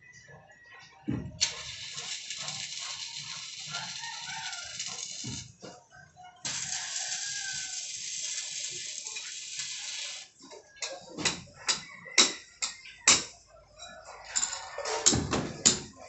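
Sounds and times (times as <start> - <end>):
arc welding crackling hiss: 1.4 - 5.6, 6.5 - 10.4.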